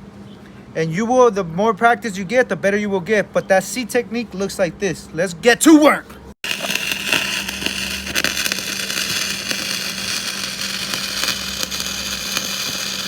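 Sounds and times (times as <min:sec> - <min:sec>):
steady hum: 0:05.7 - 0:13.0
welding arc crackling: 0:06.4 - 0:13.0.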